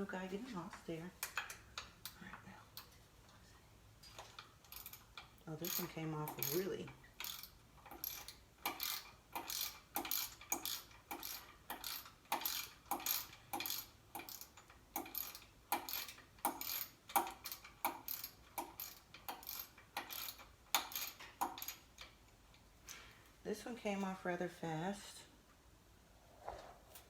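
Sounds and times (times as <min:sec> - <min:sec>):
ratchet wrench clicking: 0:04.1 - 0:22.2.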